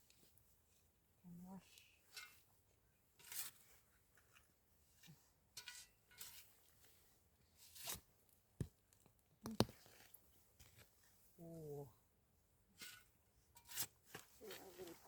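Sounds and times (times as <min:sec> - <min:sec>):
rustling and crackling: 0:12.8 - 0:15.0.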